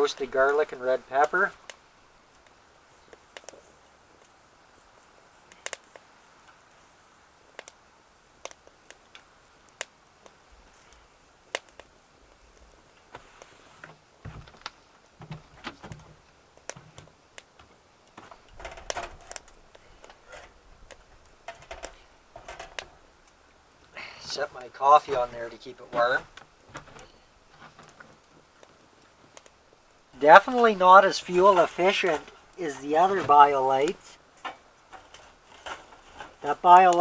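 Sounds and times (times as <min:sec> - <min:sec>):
twigs crackling and popping: 0:00.0 - 0:37.0
knocks and handling sounds: 0:13.0 - 0:23.4, 0:25.0 - 0:29.6, 0:30.3 - 0:37.0.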